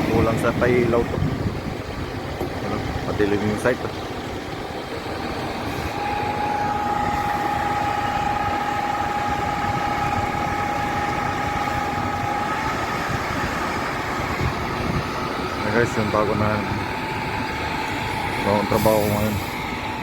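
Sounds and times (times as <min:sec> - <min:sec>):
construction machinery engines running: 0:00.0 - 0:20.0
high whine: 0:00.0 - 0:20.0.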